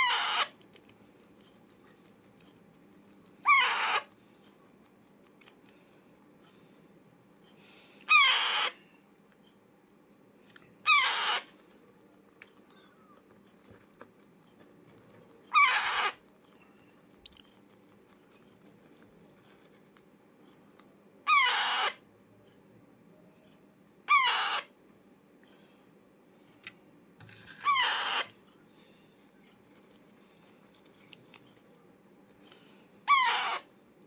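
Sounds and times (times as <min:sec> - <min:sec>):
parakeet squawking: 0:00.0 - 0:00.5, 0:03.4 - 0:04.1, 0:08.1 - 0:08.8, 0:10.8 - 0:11.5, 0:15.5 - 0:16.2, 0:21.2 - 0:22.0, 0:24.1 - 0:24.7, 0:27.6 - 0:28.3, 0:33.1 - 0:33.6.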